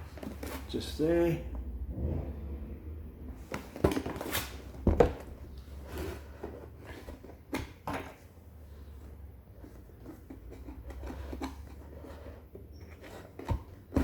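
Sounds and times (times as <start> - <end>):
cardboard box knocks and scrapes: 3.5 - 7.2.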